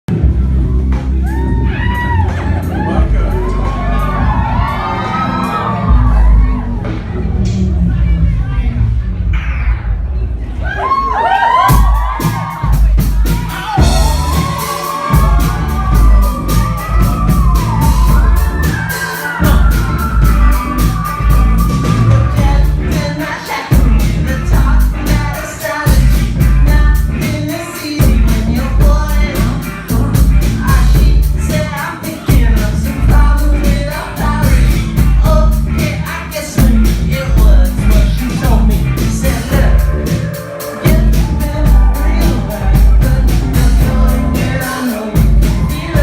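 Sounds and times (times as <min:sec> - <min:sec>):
heavy bass: 0:00.0 - 0:46.0
steady drum beat: 0:00.1 - 0:08.4, 0:11.5 - 0:46.0
live rock band: 0:00.1 - 0:10.1, 0:10.9 - 0:46.0
person singing: 0:12.7 - 0:46.0.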